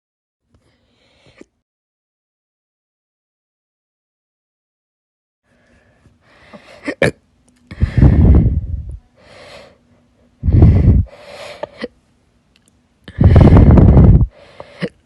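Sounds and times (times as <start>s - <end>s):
person hiccuping: 6.8s - 7.2s
breath rushing on microphone: 7.7s - 9.0s, 10.4s - 11.2s, 13.1s - 14.7s.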